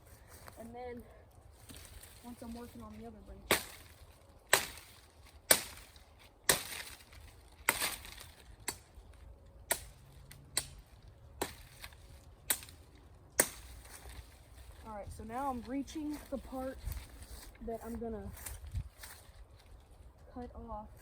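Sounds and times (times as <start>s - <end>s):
machete chopping branches: 1.6s - 14.8s.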